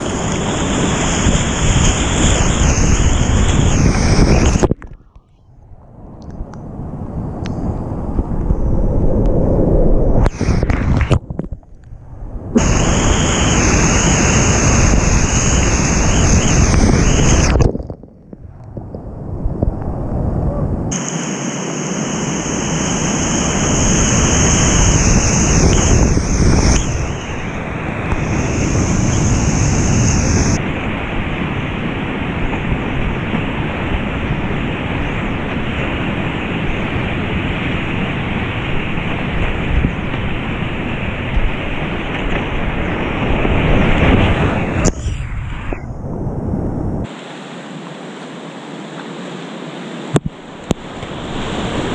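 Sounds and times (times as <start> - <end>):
rushing whitewater: 0.0 - 4.9, 12.6 - 17.6, 20.9 - 39.8, 47.1 - 51.9
wind buffeting microphone: 0.0 - 47.1.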